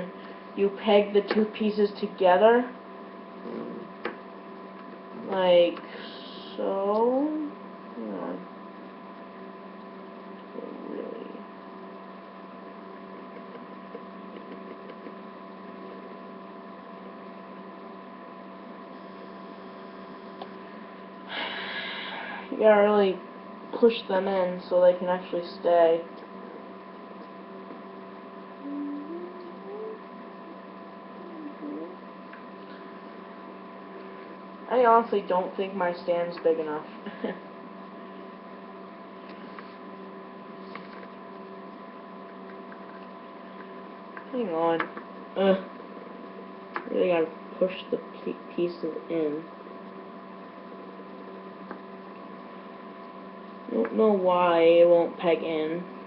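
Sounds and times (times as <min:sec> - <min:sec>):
steady electrical hum: 0:00.0 - 0:56.0.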